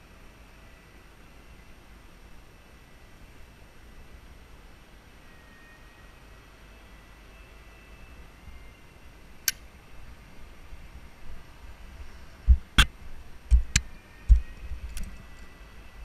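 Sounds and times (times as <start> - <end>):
sharp clicks: 9.4 - 9.6, 13.5 - 15.2
dull low thumps: 12.4 - 12.9, 13.5 - 14.5.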